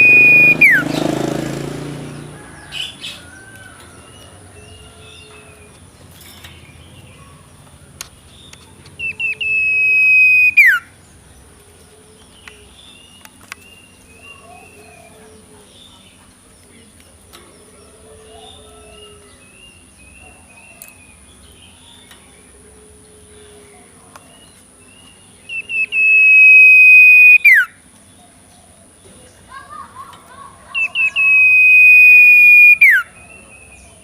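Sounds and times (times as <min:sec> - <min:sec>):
high whistle dropping in pitch: 0:00.0 - 0:00.8, 0:09.2 - 0:10.8, 0:25.8 - 0:27.7, 0:31.1 - 0:33.0
bird chirps and calls: 0:00.0 - 0:01.4, 0:06.4 - 0:11.0, 0:23.2 - 0:29.8, 0:30.4 - 0:34.0.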